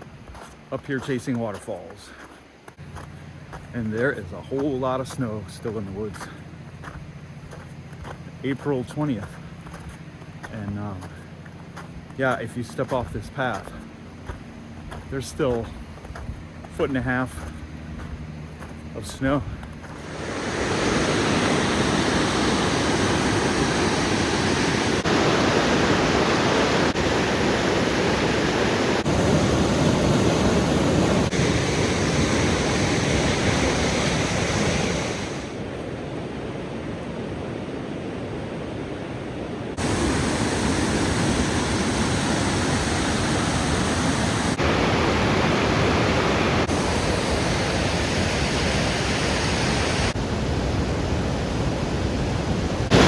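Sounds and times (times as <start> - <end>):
waterfall rushing: 20.0 - 35.7, 39.7 - 53.0.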